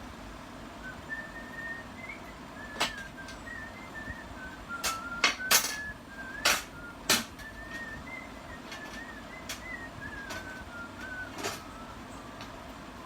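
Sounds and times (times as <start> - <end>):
person whistling a tune: 0.8 - 13.0
tools clicking and tapping: 4.8 - 5.8, 6.4 - 7.8.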